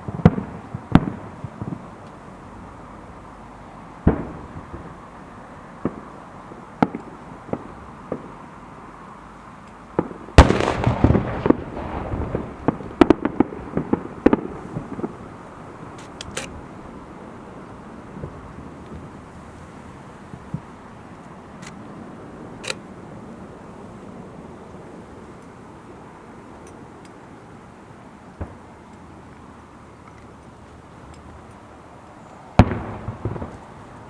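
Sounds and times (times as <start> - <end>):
fireworks booming: 0.0 - 2.7, 4.0 - 8.5, 10.0 - 23.0, 28.3 - 28.9, 32.5 - 34.0
fireworks crackling pops: 0.0 - 3.2, 3.9 - 8.6, 9.4 - 23.3, 28.3 - 34.0.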